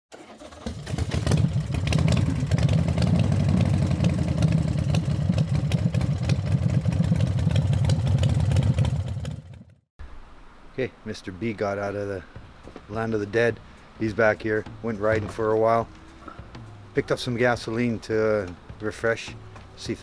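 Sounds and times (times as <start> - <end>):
motorcycle engine running: 0.6 - 9.9.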